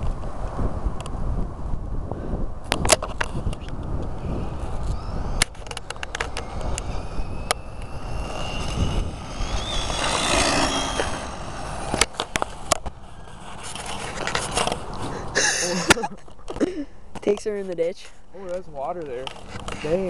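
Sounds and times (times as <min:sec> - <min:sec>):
wind rumble on microphone: 0:00.0 - 0:15.4
rc car motor whine: 0:03.5 - 0:14.2
sharp clicks: 0:04.8 - 0:12.9.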